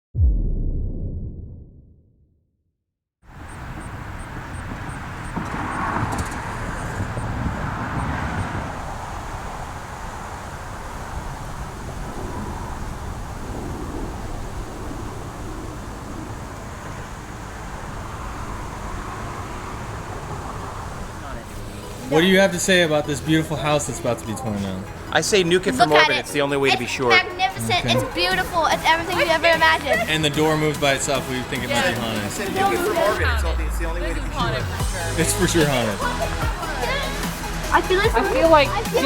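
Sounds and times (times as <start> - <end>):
low outdoor rumble: 32.6 - 38.8.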